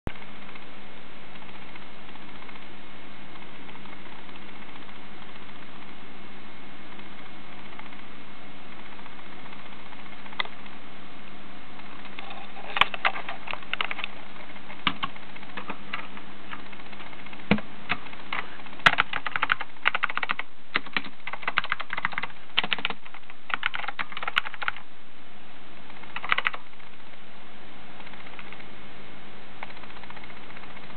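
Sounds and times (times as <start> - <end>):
mechanical keyboard typing: 12.0 - 24.8, 26.0 - 26.6, 28.0 - 28.6, 29.6 - 30.9.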